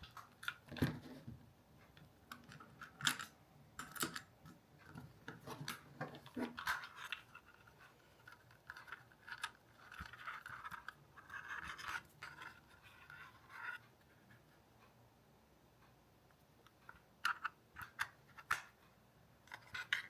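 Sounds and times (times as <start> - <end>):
faint scratching and rubbing: 4.9 - 14.7.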